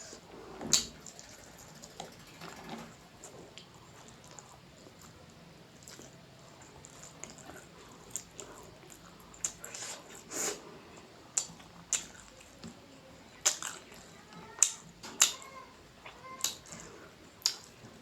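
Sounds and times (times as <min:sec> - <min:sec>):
person chewing with mouth smacks: 0:05.8 - 0:10.6, 0:11.3 - 0:12.7, 0:13.4 - 0:15.4, 0:16.0 - 0:17.8.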